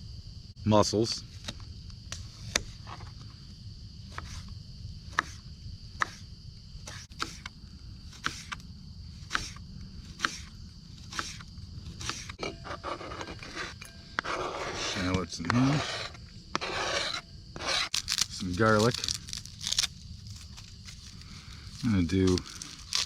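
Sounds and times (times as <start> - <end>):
knife chopping on cutting board: 6.0 - 6.2, 10.2 - 10.5
knife scraping cutting board: 12.0 - 18.0.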